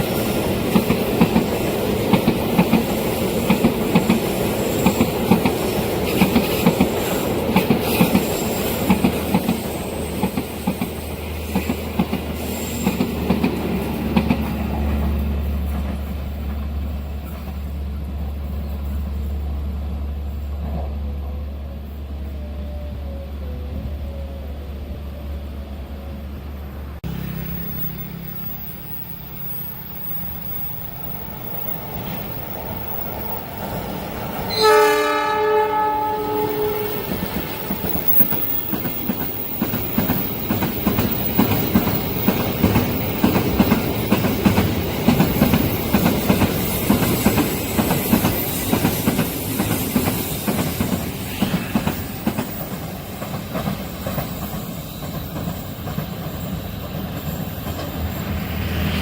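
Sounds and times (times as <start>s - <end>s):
wheels clacking over rail joints: 0.0s - 18.9s, 36.0s - 59.0s
train passing rumble: 0.0s - 59.0s
train horn: 21.0s - 25.6s, 34.4s - 38.5s.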